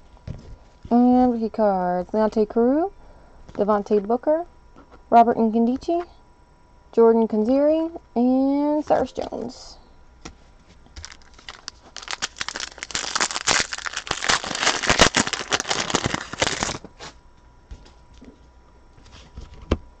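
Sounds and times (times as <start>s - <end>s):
wrapper crinkling and tearing: 11.0s - 16.9s.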